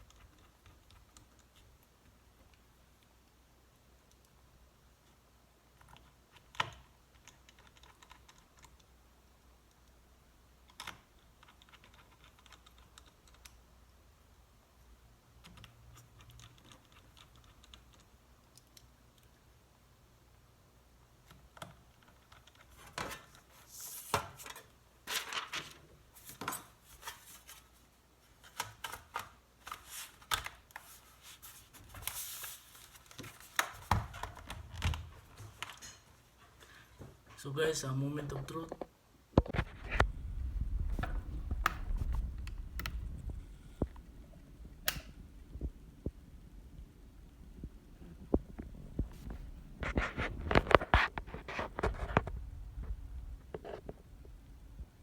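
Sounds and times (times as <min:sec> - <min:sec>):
laptop clicks and scrapes: 0:48.6 - 0:52.9.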